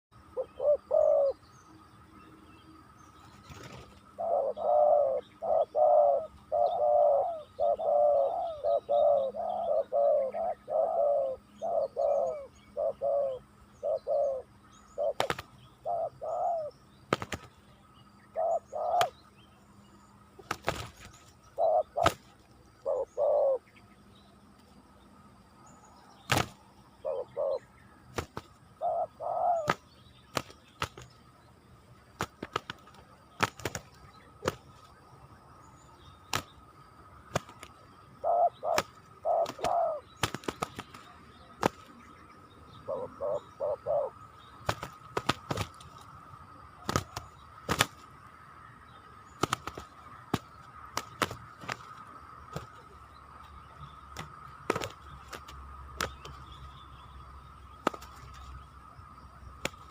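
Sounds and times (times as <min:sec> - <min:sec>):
doves cooing: 0:00.2 - 0:01.5, 0:03.5 - 0:17.5, 0:18.2 - 0:19.3, 0:20.4 - 0:23.8, 0:26.3 - 0:31.1, 0:37.2 - 0:48.1.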